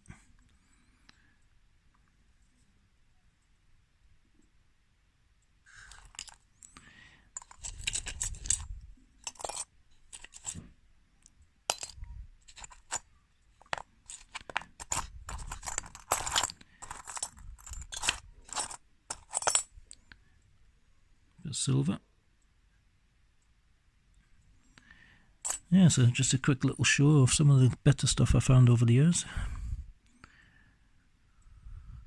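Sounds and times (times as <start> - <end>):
coins clinking and rattling: 5.7 - 6.4, 7.4 - 10.6, 11.7 - 19.7, 25.4 - 25.7.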